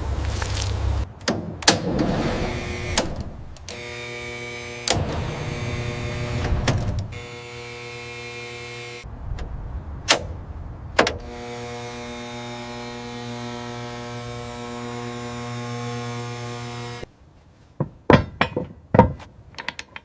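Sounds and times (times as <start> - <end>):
power tool motor humming: 3.7 - 9.0, 11.2 - 17.1.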